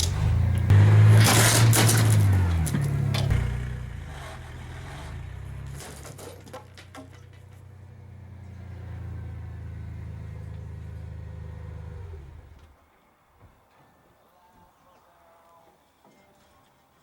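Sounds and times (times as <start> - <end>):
sharp cracks: 0.0 - 8.0
vehicle engine running: 0.0 - 12.7.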